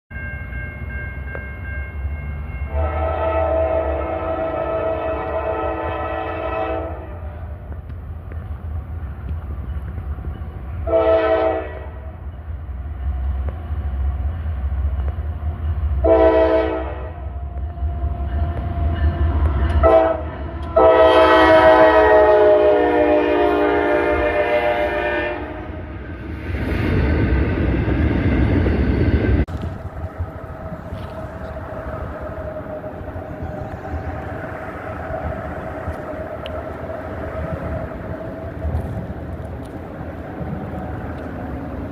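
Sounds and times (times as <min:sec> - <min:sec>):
locomotive engine rumble: 0:00.4 - 0:41.9
locomotive air horn blasts: 0:02.7 - 0:07.6, 0:10.8 - 0:12.2, 0:16.0 - 0:17.4, 0:19.7 - 0:25.8.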